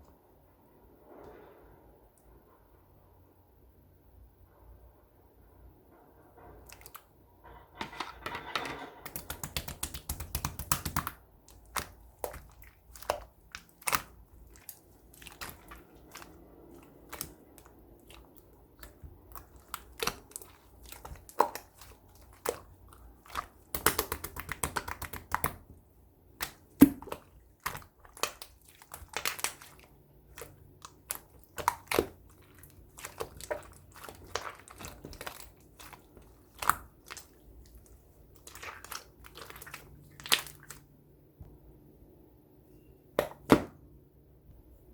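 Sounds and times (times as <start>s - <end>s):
crinkling and rustling: 10.6s - 25.8s, 26.4s - 40.8s.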